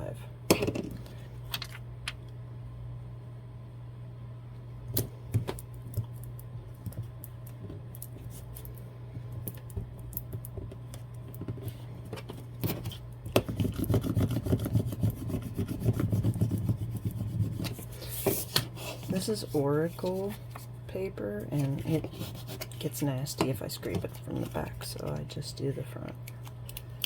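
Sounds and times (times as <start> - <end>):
steady low hum: 0.0 - 27.0
scraper rubbing vinyl: 12.7 - 20.6, 21.6 - 22.8.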